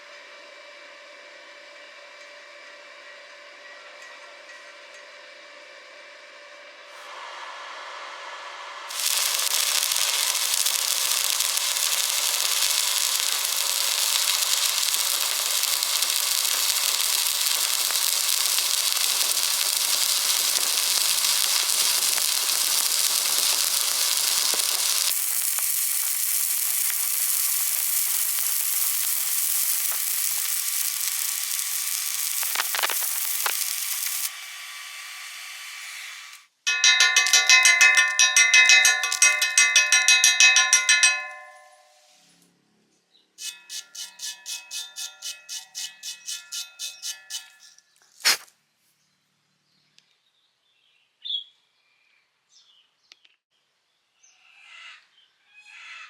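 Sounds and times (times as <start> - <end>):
welding arc burning: 8.9 - 41.8, 43.4 - 48.4.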